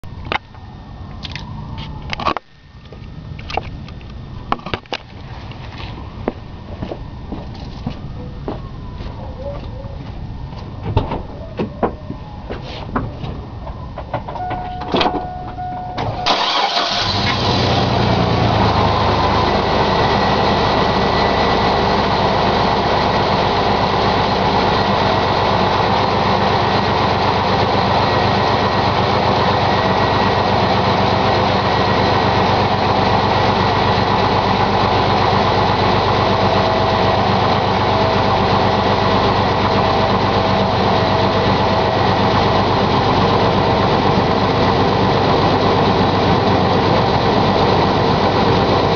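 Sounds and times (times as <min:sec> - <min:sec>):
car engine idling: 0:13.4 - 0:48.9.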